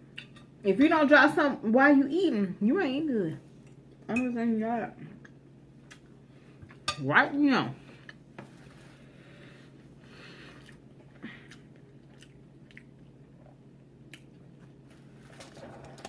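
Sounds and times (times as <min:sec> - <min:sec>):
low steady hum: 0:00.0 - 0:16.0
person chewing: 0:10.4 - 0:14.9.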